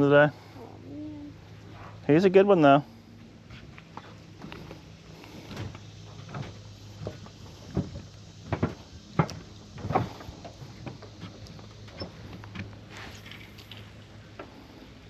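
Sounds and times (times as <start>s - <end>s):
knocks and thumps on a dock: 5.5s - 12.7s.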